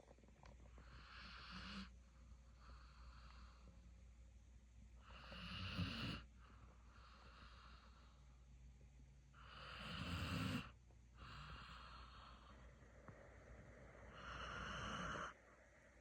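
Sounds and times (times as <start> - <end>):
puppy snoring: 0.8 - 3.7, 5.0 - 8.2, 9.4 - 12.8, 14.1 - 15.4.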